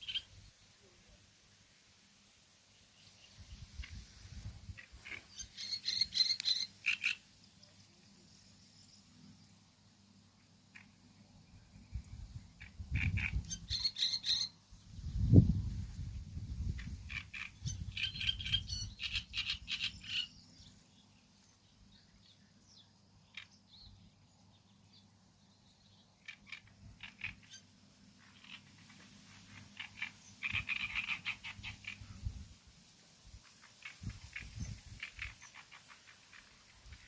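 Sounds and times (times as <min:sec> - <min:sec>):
animal clicking croaks: 0:26.2 - 0:27.6.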